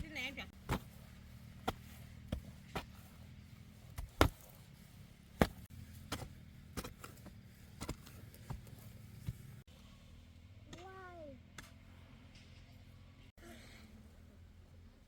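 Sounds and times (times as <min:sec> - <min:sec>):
blade chopping: 0:00.0 - 0:09.6.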